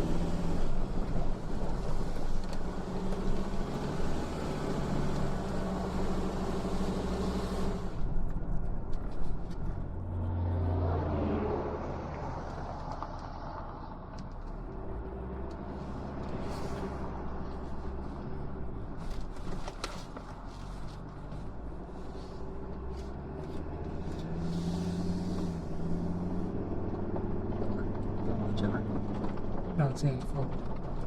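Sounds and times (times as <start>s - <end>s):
car engine running: 0.0s - 31.0s
road and tyre noise: 0.0s - 31.0s.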